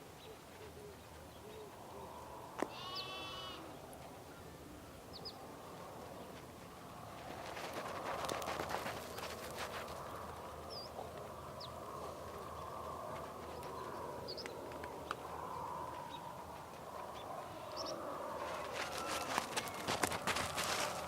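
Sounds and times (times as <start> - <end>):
sheep bleating: 2.7 - 3.7.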